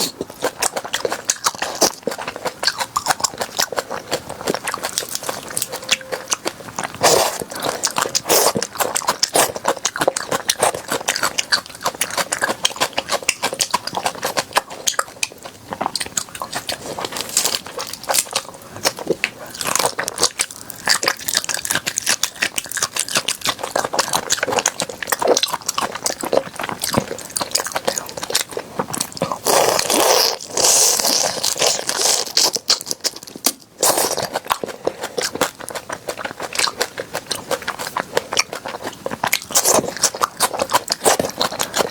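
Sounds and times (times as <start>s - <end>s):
crunchy chewing: 0.0s - 41.9s.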